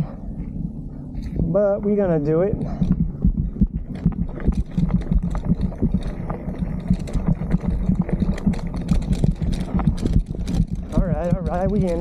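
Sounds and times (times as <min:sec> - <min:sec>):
wind rumble on microphone: 0:00.0 - 0:12.0
bicycle frame rattling: 0:03.8 - 0:12.0.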